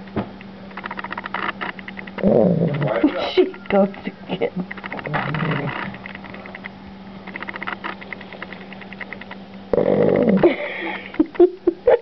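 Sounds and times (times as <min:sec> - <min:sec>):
puppy snoring: 0:02.2 - 0:03.8, 0:04.9 - 0:06.6, 0:09.7 - 0:10.6
puppy snorting: 0:02.2 - 0:04.0, 0:04.6 - 0:06.7, 0:09.7 - 0:10.5.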